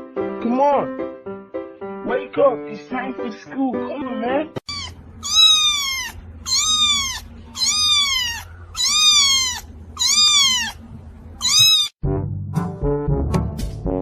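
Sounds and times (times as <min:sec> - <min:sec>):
cat meowing: 0:04.7 - 0:10.8, 0:11.4 - 0:12.0
brass music: 0:12.0 - 0:14.0.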